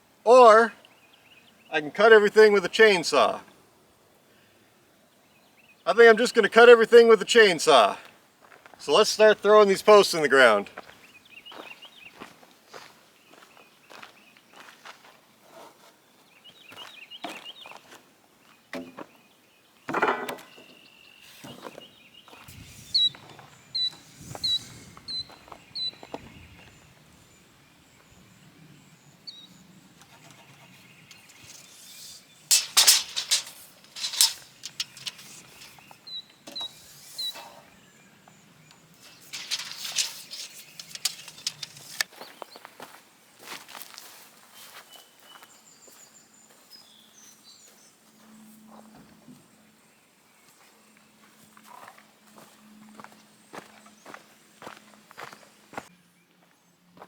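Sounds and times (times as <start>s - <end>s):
scraping bursts: 30.1s - 37.6s, 38.9s - 42.0s
footsteps: 31.1s - 36.0s, 39.0s - 42.1s.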